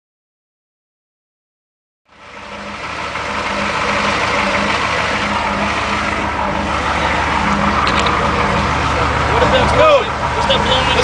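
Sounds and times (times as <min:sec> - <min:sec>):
vehicle engine idling: 0:02.1 - 0:11.0.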